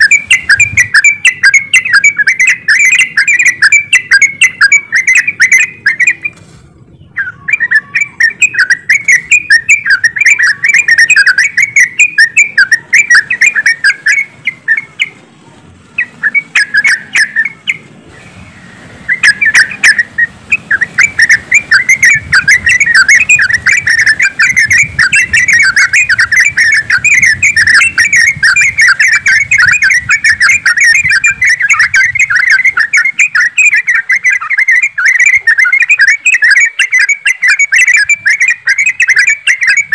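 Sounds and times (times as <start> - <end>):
bulbuls chattering: 0.0 - 39.9.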